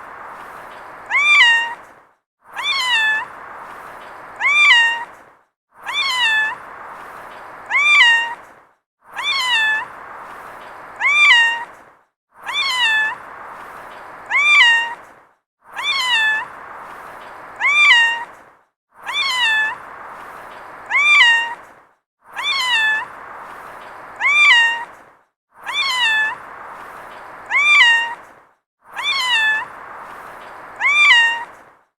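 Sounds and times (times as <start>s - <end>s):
cat meowing: 1.1s - 1.8s, 2.6s - 3.3s, 4.4s - 5.1s, 5.8s - 6.6s, 7.7s - 8.4s, 9.2s - 9.8s, 11.0s - 11.6s, 12.4s - 13.2s, 14.3s - 15.0s, 15.8s - 16.4s, 17.6s - 18.2s, 19.0s - 19.8s, 20.9s - 21.6s, 22.4s - 23.1s, 24.2s - 24.9s, 25.6s - 26.4s, 27.5s - 28.2s, 29.0s - 29.7s, 30.8s - 31.6s.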